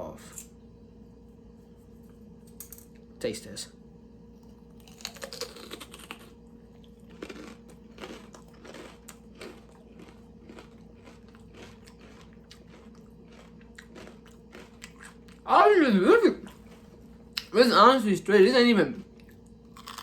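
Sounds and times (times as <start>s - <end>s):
chewing and crunching: 4.4s - 15.7s, 16.4s - 17.5s, 18.9s - 20.0s.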